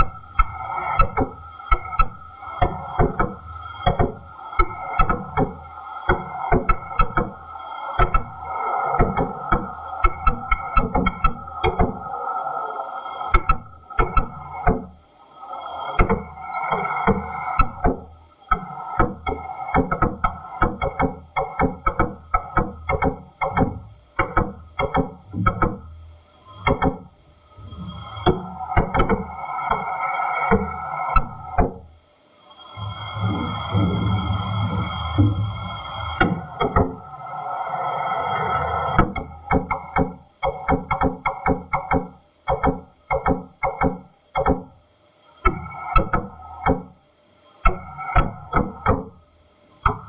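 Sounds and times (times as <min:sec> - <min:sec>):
steady hiss: 0:25.9 - 0:39.7.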